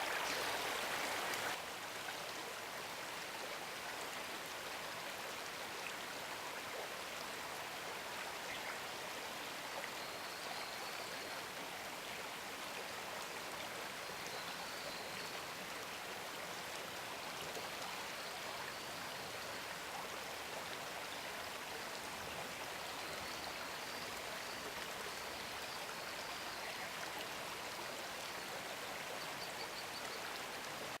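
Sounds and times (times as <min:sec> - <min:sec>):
river water rushing: 0:00.0 - 0:02.0.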